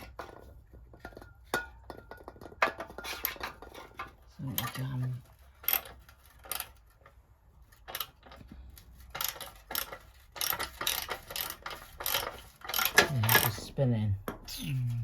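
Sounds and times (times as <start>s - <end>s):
ratchet spanner clicking: 5.6s - 7.0s, 7.7s - 13.5s.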